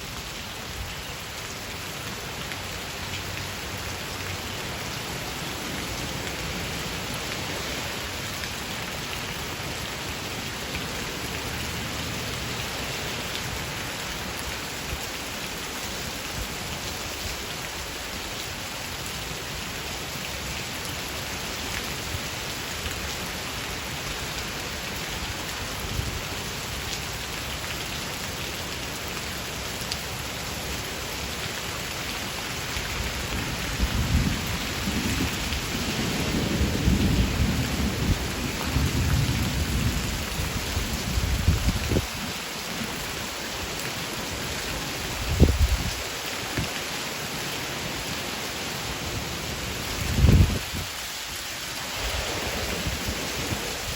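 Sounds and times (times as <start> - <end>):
rain on hard surfaces: 0.0 - 53.9
low rumble of thunder: 33.6 - 42.1, 51.9 - 53.9.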